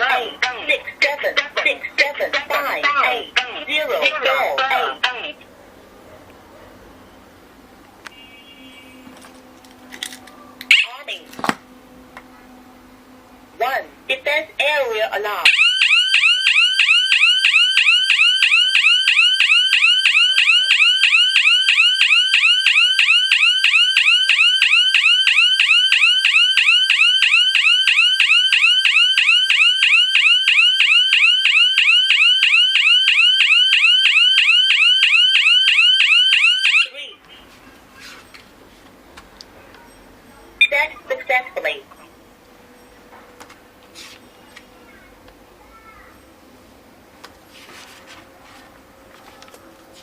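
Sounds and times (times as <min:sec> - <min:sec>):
electronic alarm siren warbling: 0:15.5 - 0:37.0.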